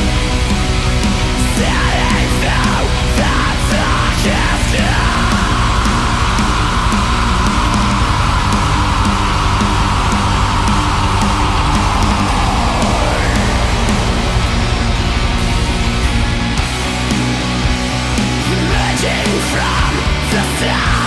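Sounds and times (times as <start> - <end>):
distorted metal band playing: 0.0 - 21.0
steady high tone layer: 1.0 - 18.1
sweeping pitch glides: 5.5 - 17.1.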